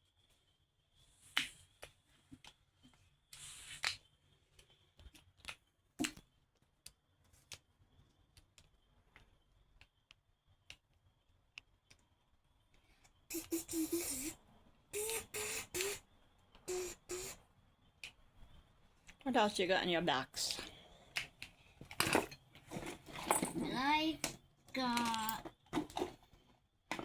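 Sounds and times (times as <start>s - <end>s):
fidget toy clicking and snapping: 8.3s - 14.4s, 15.0s - 17.4s, 18.0s - 18.3s.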